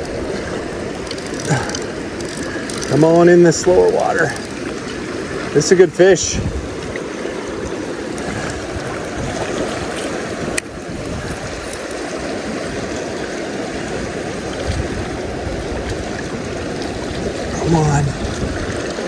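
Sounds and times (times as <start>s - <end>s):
river water rushing: 0.0s - 19.0s.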